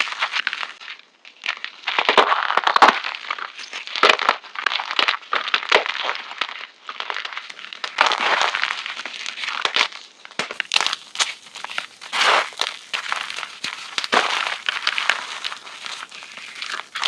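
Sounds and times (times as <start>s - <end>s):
chalk being crushed and crumbled: 10.6s - 17.0s.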